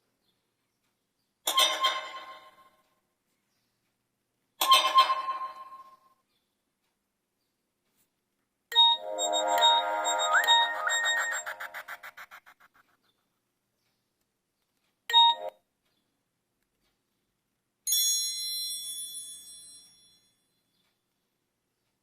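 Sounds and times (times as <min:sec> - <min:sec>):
ringtone pulsing echoes: 0:08.7 - 0:12.9, 0:15.1 - 0:15.6
short electronic tone: 0:09.2 - 0:12.5
bright bell-like chime: 0:17.9 - 0:20.5.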